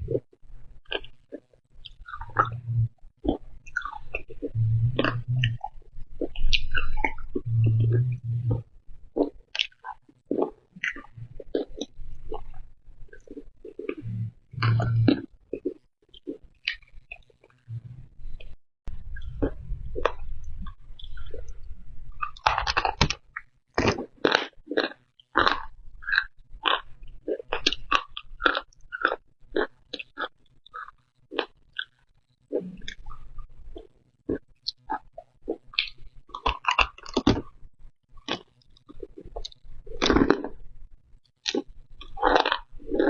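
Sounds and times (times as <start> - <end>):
crunchy chewing: 0.0 - 18.6, 19.2 - 37.6, 38.2 - 40.7, 41.4 - 43.0
soft mouth sounds: 0.0 - 37.6
crunchy bites and chewing: 22.2 - 32.0, 38.2 - 40.6, 41.5 - 43.0.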